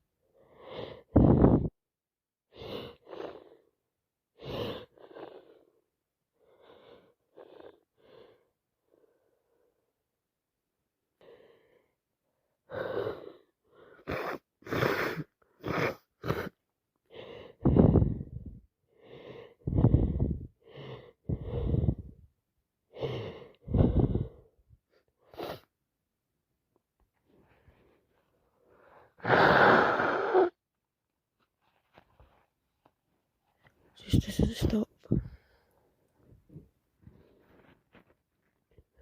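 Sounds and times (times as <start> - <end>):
soft breath intake: 23.0 - 24.6, 27.3 - 30.6.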